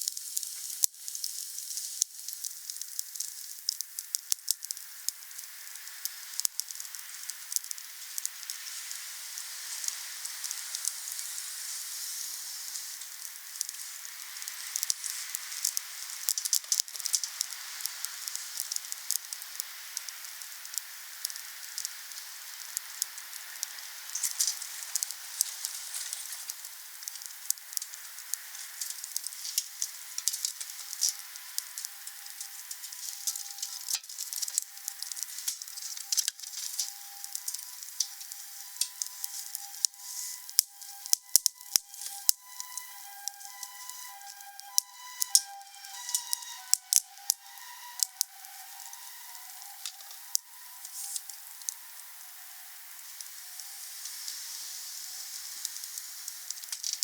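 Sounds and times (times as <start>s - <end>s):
campfire crackling and popping: 0.0s - 57.0s
thin whistling tones: 30.8s - 55.4s.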